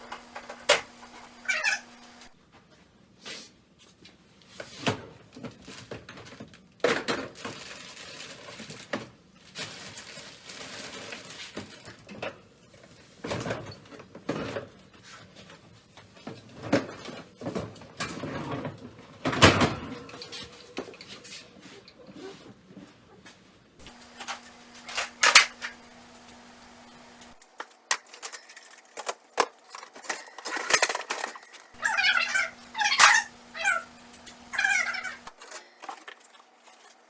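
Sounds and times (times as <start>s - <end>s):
tools clattering: 23.8s - 37.0s.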